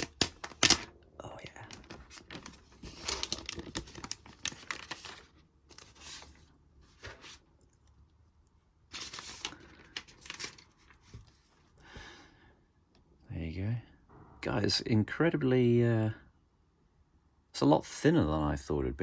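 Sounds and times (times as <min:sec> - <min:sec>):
plastic wrapping tearing and rustling: 0:01.7 - 0:07.4, 0:08.9 - 0:11.1.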